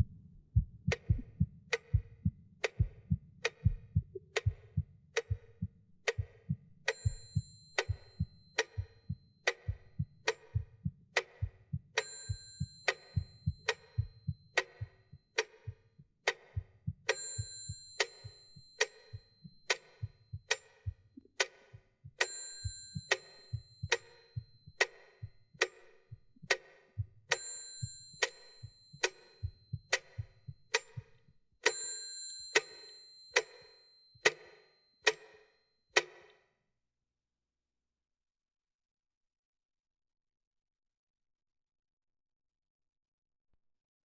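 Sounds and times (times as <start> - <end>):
heartbeat-like thumps: 0.0 - 17.8, 18.6 - 21.4, 22.0 - 27.3, 27.9 - 31.2
steady sharp ticks: 0.0 - 31.8, 32.5 - 36.4.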